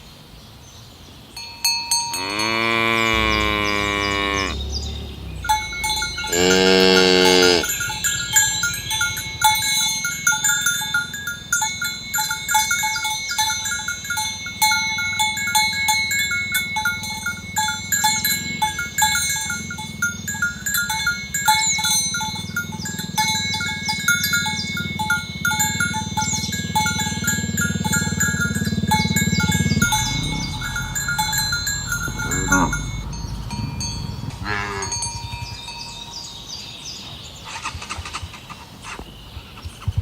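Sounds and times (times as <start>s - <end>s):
cow bells clinking: 1.4s - 37.3s
cow mooing: 2.1s - 8.0s, 25.5s - 35.1s.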